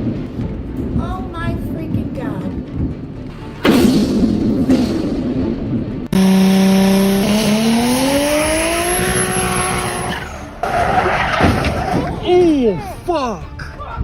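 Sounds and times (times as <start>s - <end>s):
car engine revving: 5.1s - 11.9s.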